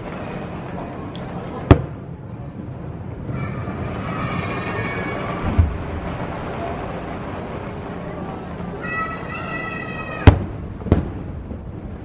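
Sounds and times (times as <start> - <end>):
distant firework boom: 0.0 - 12.0
steady rumbling: 0.0 - 12.0
faint high squealing: 3.2 - 10.3.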